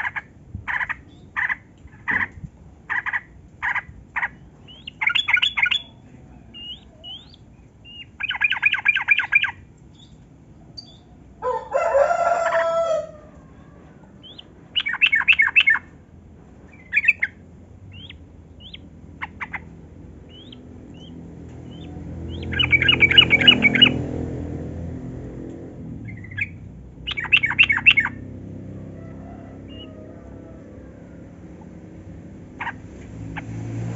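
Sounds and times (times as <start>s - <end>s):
bird chattering song: 0.0s - 10.2s, 10.8s - 11.2s, 14.2s - 15.9s, 16.7s - 24.2s, 26.0s - 28.3s
low rumble: 15.8s - 33.0s
harsh bird call: 20.3s - 24.0s, 26.1s - 28.2s.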